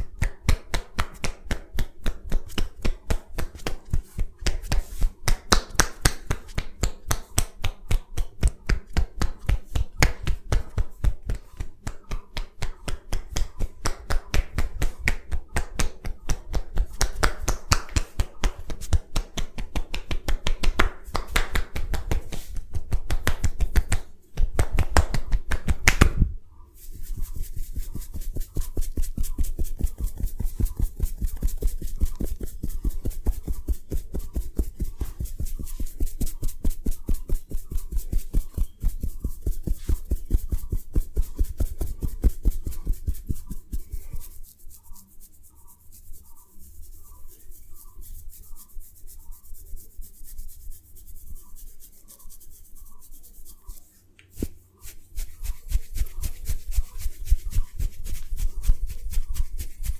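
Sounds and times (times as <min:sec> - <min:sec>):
rapid massage strikes on body: 0:00.0 - 0:26.2, 0:26.8 - 0:59.9.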